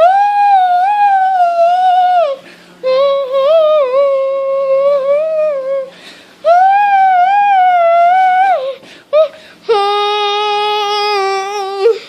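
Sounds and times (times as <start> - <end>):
person breathing in: 5.9 - 6.4, 8.8 - 9.7.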